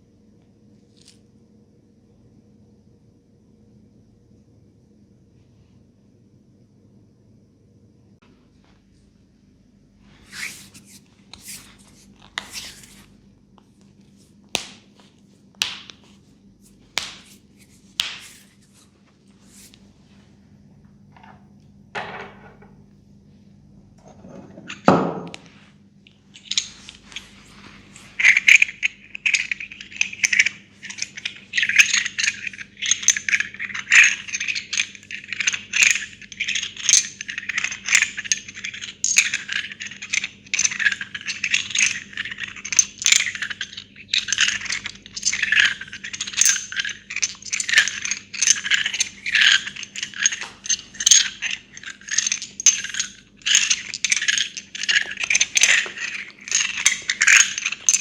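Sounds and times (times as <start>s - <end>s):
faint steady hum: 0.0s - 58.0s
hands rubbing through hair: 10.0s - 13.2s, 14.1s - 20.2s.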